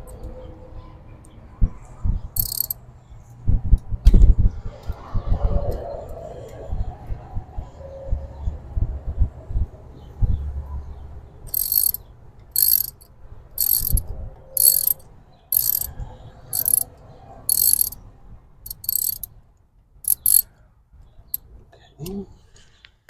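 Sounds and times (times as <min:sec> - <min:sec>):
ratchet wrench clicking: 0:02.4 - 0:02.8, 0:11.5 - 0:12.0, 0:12.6 - 0:14.0, 0:14.6 - 0:15.0, 0:15.6 - 0:15.9, 0:16.6 - 0:16.8, 0:17.5 - 0:18.0, 0:18.7 - 0:19.3, 0:20.1 - 0:20.4.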